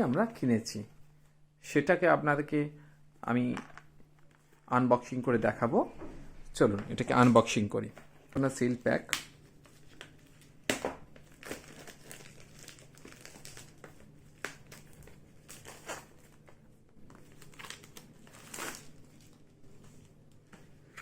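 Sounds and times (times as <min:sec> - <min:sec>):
plastic wrap crinkling: 0:08.5 - 0:21.0.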